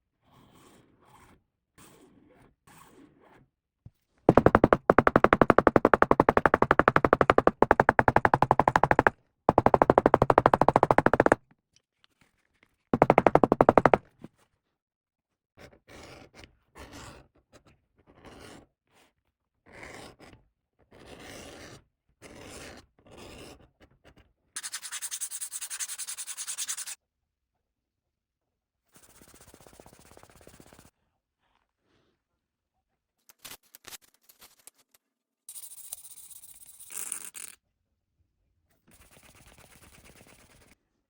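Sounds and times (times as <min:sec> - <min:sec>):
leatherworking tool rattling: 0:04.3 - 0:11.4, 0:13.0 - 0:14.0
tool rubbing and scraping strokes: 0:24.6 - 0:27.0.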